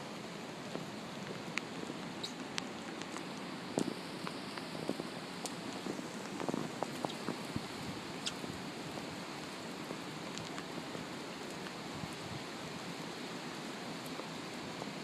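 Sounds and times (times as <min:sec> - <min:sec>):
heavy rain and wind: 0:00.0 - 0:15.0
raindrops ticking: 0:00.6 - 0:12.2.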